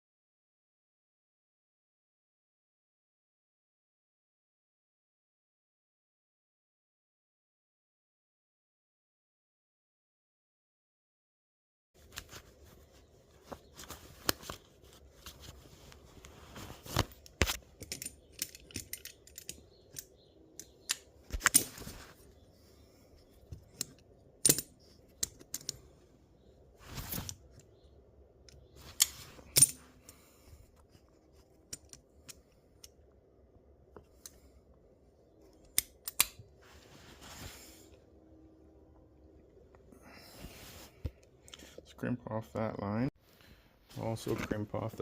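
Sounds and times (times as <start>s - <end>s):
metal tools clinking: 17.6s - 21.9s, 23.7s - 25.8s, 28.8s - 30.2s.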